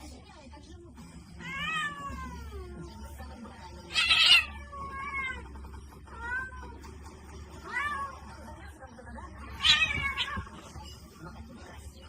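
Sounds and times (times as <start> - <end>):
cat meowing: 1.4 - 2.7, 3.8 - 5.5, 6.1 - 6.8, 7.6 - 8.2, 9.4 - 10.7.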